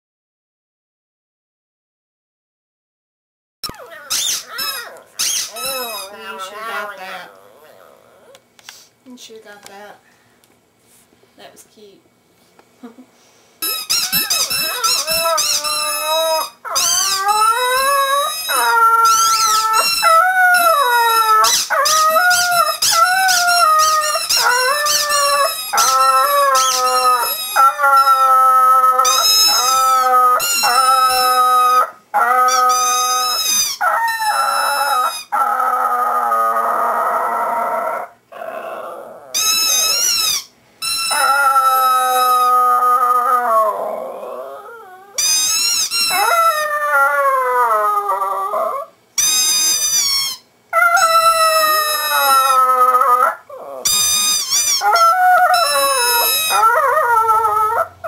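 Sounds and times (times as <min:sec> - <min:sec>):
dog squeaky notes: 0:03.6 - 0:07.9, 0:13.6 - 0:28.4, 0:29.0 - 0:35.4, 0:39.3 - 0:42.8, 0:45.1 - 0:46.7, 0:49.2 - 0:52.8, 0:53.8 - 0:57.8
small dog howling: 0:03.7 - 0:08.4, 0:14.0 - 0:40.0, 0:41.1 - 0:45.5, 0:46.1 - 0:48.9, 0:50.8 - 0:58.0.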